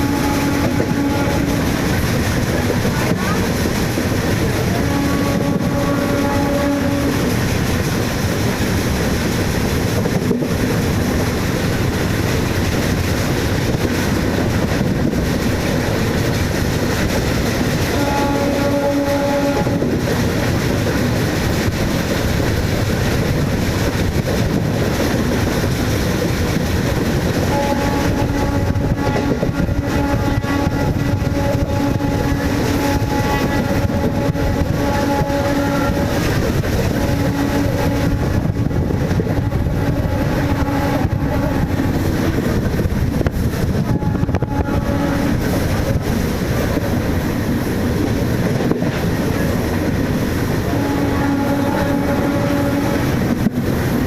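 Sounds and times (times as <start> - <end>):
train air horn blasts: 0.0 - 3.6, 4.5 - 7.5, 17.8 - 20.1, 27.4 - 42.6, 43.6 - 46.0, 50.5 - 53.5
electric train rumble and rail clatter: 0.0 - 54.0.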